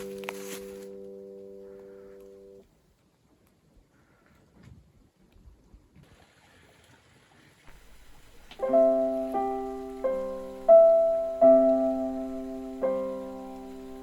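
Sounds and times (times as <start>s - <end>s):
piano chords: 0.0s - 2.6s, 8.2s - 14.0s.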